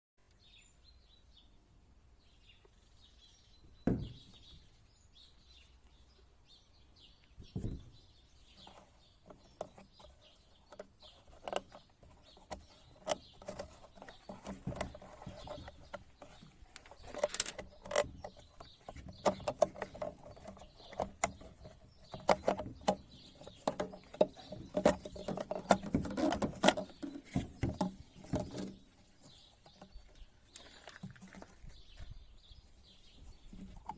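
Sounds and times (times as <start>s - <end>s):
clicks and knocks of handling: 8.6s - 32.2s.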